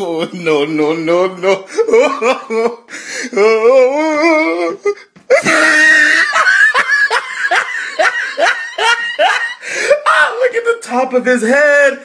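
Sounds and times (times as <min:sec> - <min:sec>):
person laughing hard: 0:01.6 - 0:10.2.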